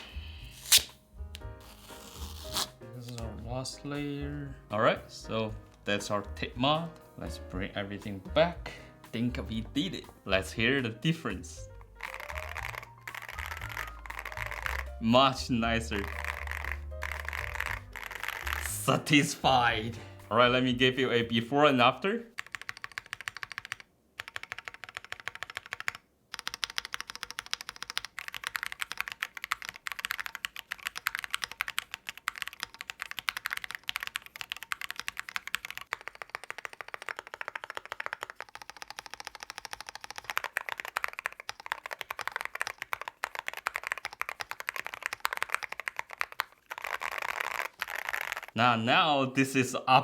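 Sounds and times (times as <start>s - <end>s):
fast mechanical keyboard typing: 12.0s - 19.7s, 22.3s - 48.6s.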